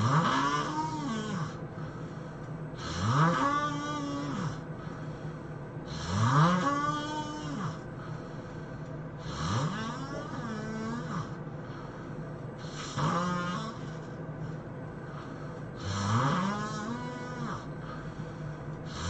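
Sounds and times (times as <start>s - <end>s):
person snoring heavily: 0.0s - 2.1s, 2.8s - 5.1s, 5.8s - 8.4s, 9.2s - 11.4s, 12.6s - 14.2s, 15.1s - 19.0s.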